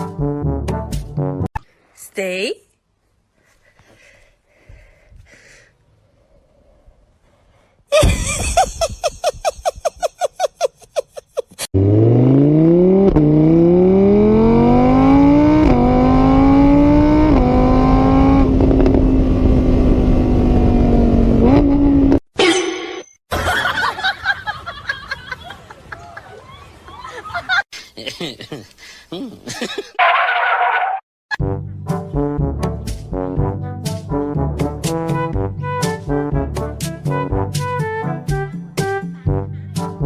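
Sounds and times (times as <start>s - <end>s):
car engine accelerating hard: 11.8s - 22.2s.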